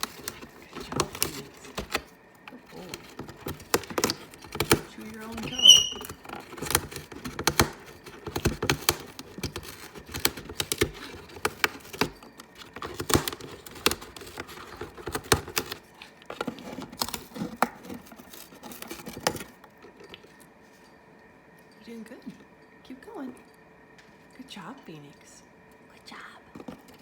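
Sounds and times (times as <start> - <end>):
parrot beak shredding chew toy: 0.0 - 19.6.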